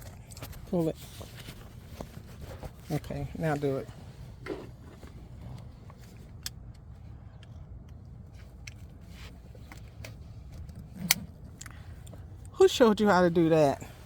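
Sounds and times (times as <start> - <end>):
seat belt webbing rustling: 0.0 - 12.5
low car rumble: 0.0 - 14.0
seat belt buckle latching: 8.6 - 11.7.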